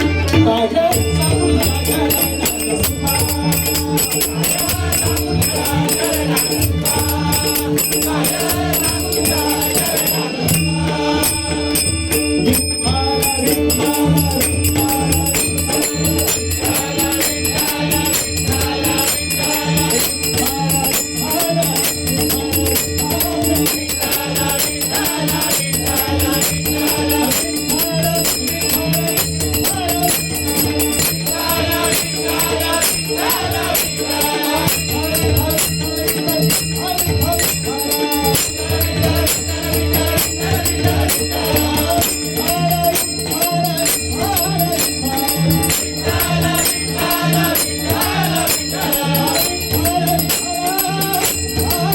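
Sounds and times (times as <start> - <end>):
jingling percussion beat: 0.0 - 51.9
person singing devotional song: 0.0 - 51.9.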